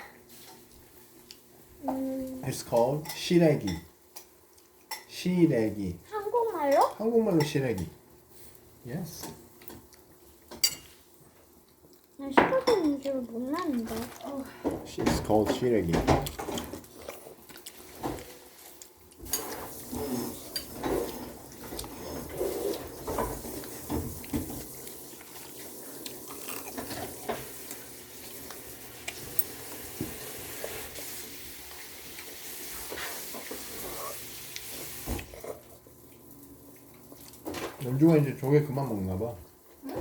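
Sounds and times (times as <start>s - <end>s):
utensils clinking on dishes: 10.5s - 11.0s.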